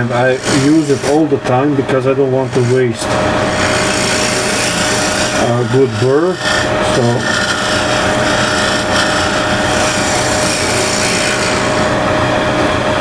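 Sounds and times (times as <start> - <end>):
scraper rasping on spinning wood: 0.0 - 12.6
lathe humming: 0.0 - 13.0.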